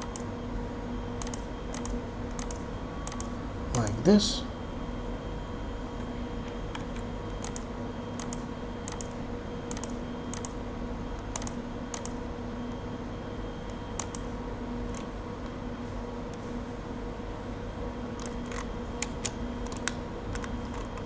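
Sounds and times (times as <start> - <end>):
keyboard and mouse clicks: 0.0 - 0.3, 1.2 - 3.3, 6.4 - 10.6, 11.2 - 12.2, 13.7 - 14.3, 18.2 - 21.0
low electrical hum: 0.0 - 21.0.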